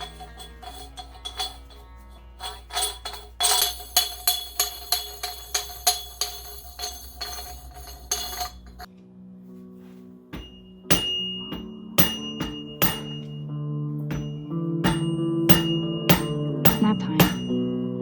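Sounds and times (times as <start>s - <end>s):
tambourine-like hits: 10.4s - 13.4s, 14.0s - 17.7s.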